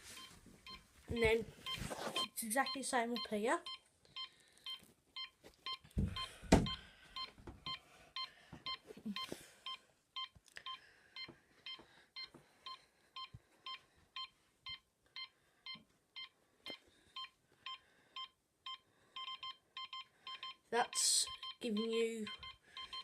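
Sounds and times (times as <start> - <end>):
alarm keypad beeping: 16.2 - 23.0.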